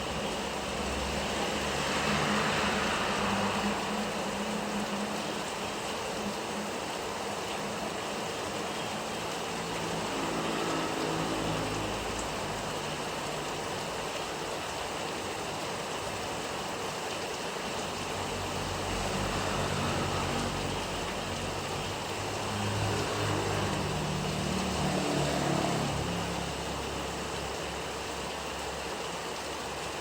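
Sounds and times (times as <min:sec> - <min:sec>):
steady rain hissing: 0:00.0 - 0:30.0
vehicle engine passing: 0:00.1 - 0:06.0, 0:09.2 - 0:14.1, 0:17.9 - 0:28.3.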